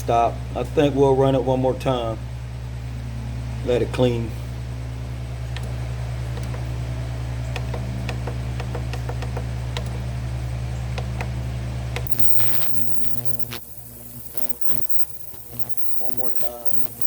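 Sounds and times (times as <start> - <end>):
machine hum: 2.2 - 17.0
light irregular ticking: 12.0 - 17.0.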